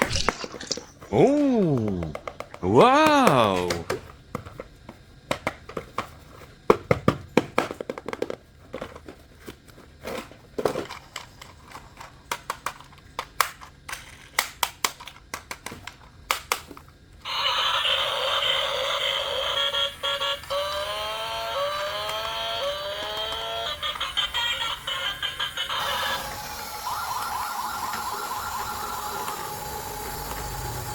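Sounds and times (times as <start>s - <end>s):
plastic toys clicking and crinkling: 3.6s - 17.0s, 18.7s - 26.2s.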